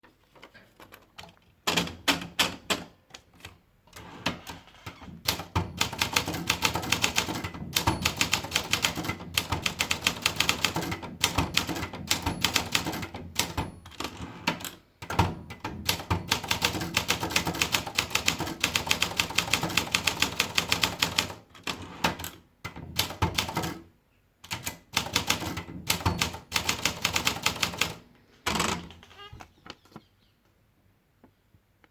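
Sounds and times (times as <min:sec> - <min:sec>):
typewriter key strikes: 0:01.7 - 0:02.9, 0:05.2 - 0:23.8, 0:24.5 - 0:28.8.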